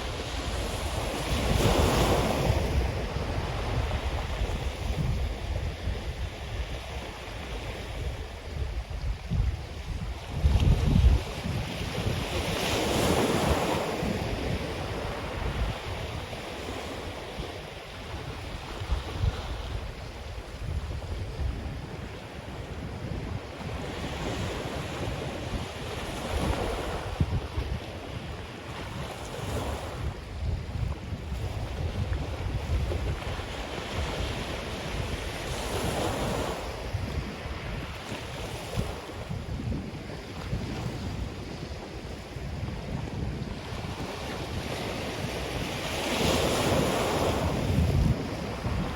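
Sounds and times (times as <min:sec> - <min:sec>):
ocean surf washing onto beach: 0:00.0 - 0:48.9
wind buffeting microphone: 0:00.0 - 0:48.9.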